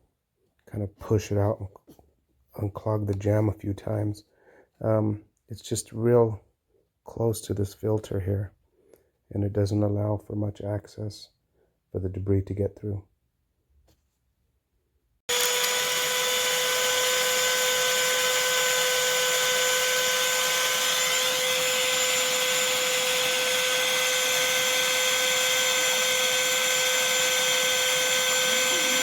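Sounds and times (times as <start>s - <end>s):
handheld vacuum whining: 15.3s - 29.0s.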